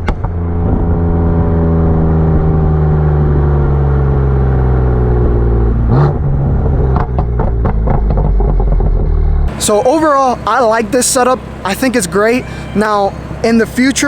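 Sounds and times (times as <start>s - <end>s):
car engine running: 0.0s - 14.0s
exhaust cracks: 0.0s - 14.0s
engine blip: 5.2s - 14.0s.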